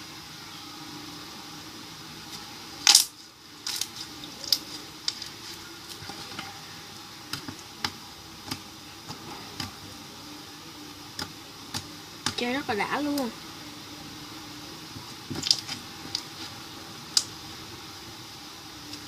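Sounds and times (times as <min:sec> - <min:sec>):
slime squelch: 0:15.0 - 0:17.3.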